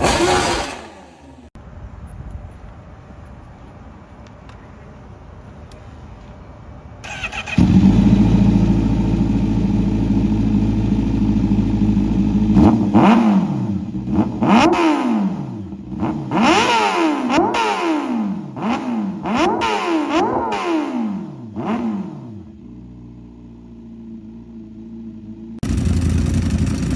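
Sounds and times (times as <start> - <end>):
motorcycle engine revving: 0.0 - 1.6, 7.0 - 26.9.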